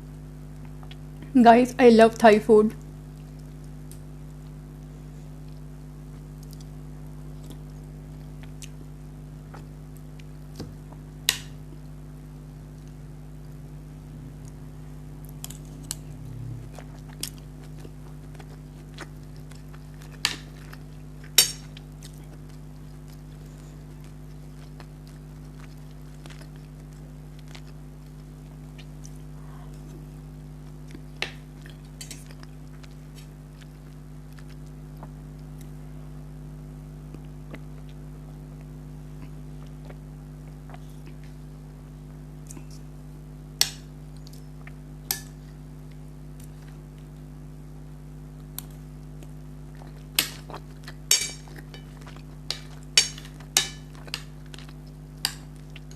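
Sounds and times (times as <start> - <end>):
low electrical hum: 0.0 - 55.9
quiet chewing: 2.8 - 11.1, 15.2 - 35.8, 37.0 - 41.6, 42.4 - 43.0, 48.3 - 55.9.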